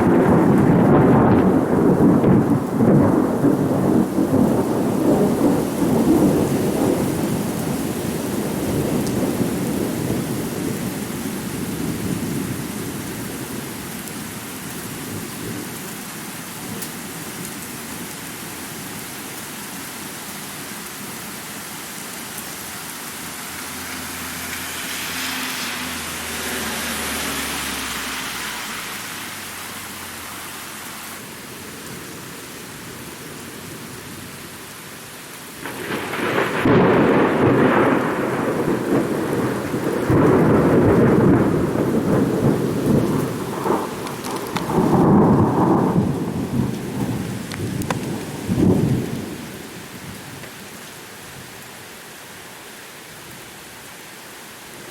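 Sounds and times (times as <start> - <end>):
thunder rolling: 0.0 - 11.0, 35.6 - 50.2
steady rain: 0.0 - 54.9.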